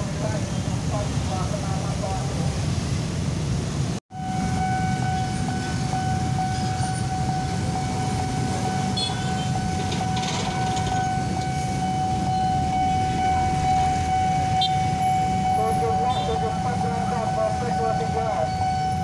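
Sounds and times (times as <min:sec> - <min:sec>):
level crossing alarm tone: 0:04.1 - 0:19.0.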